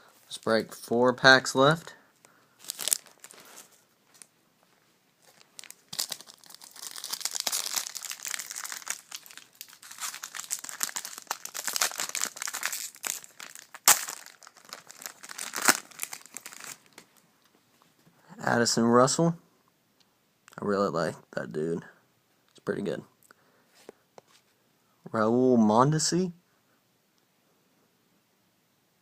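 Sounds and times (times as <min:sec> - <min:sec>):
wrapper tearing and crinkling: 0:02.6 - 0:04.3, 0:05.2 - 0:17.1.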